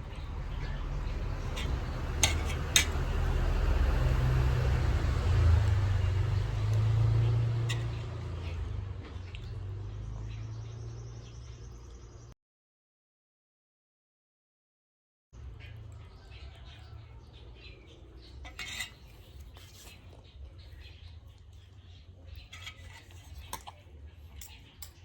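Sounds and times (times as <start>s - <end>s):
motorcycle engine passing: 0.0s - 11.3s.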